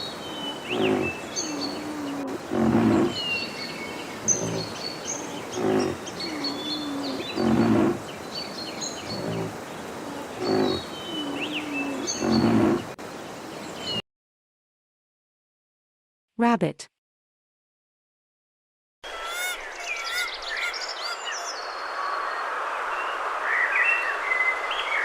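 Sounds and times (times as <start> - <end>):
faint birds chirping: 0.0 - 14.0
rhinoceros calling: 0.3 - 13.0.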